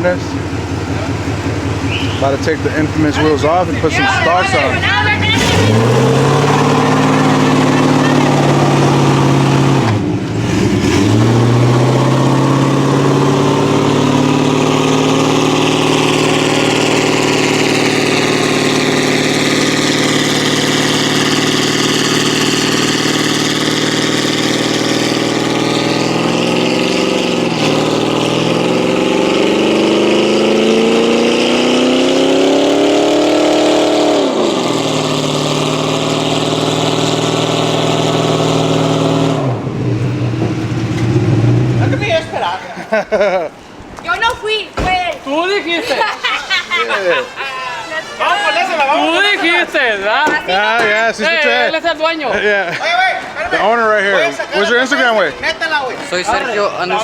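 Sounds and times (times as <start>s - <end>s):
truck engine at high revs: 0.0s - 42.3s.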